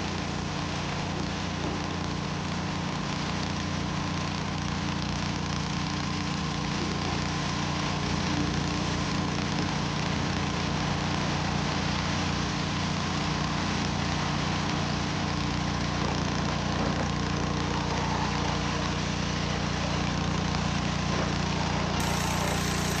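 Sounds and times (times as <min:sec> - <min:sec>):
pressure washer engine running: 0:22.0 - 0:23.0
water spray hissing: 0:22.0 - 0:23.0.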